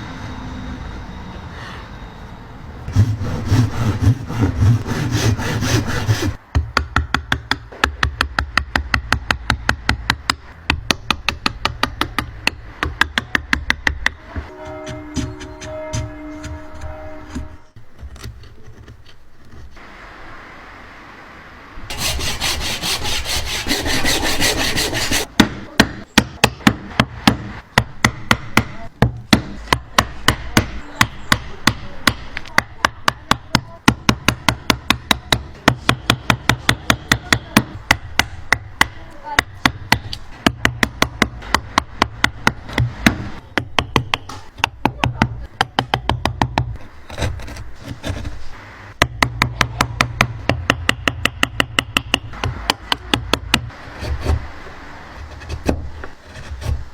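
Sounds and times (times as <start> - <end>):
rasping on wood: 2.9 - 6.4, 21.9 - 25.3.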